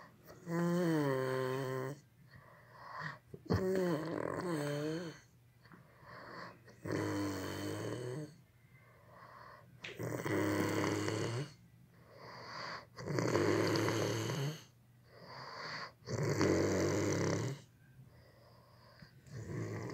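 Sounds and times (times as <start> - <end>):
person snoring: 0.0 - 2.0, 3.0 - 5.3, 6.2 - 8.4, 10.0 - 11.6, 12.2 - 17.7, 18.9 - 19.9
quiet breaths: 0.0 - 19.9.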